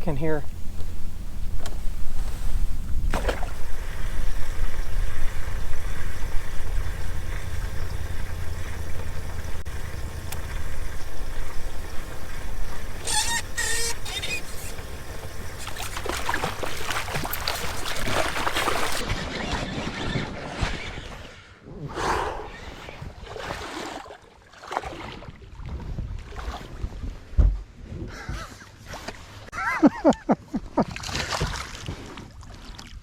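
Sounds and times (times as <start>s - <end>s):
boat motor running: 0.0s - 19.0s
water splashing: 0.0s - 19.4s, 23.2s - 25.6s.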